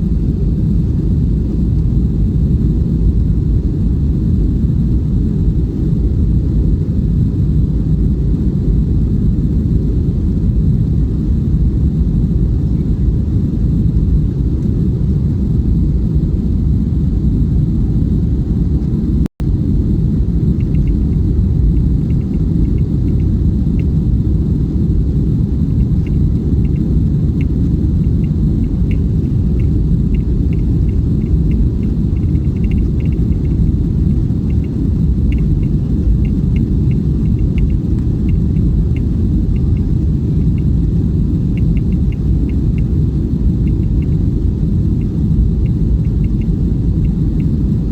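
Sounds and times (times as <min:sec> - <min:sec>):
jet engine rumble in cabin: 0:00.0 - 0:47.9
faint light ticks or rattles: 0:20.6 - 0:24.0, 0:25.7 - 0:40.8, 0:41.4 - 0:47.6.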